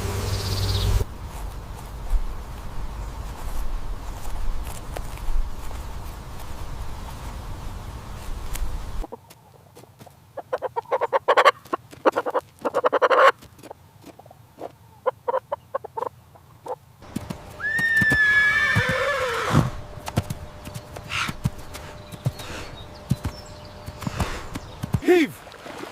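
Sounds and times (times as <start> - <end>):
horse neighing: 17.6 - 19.8.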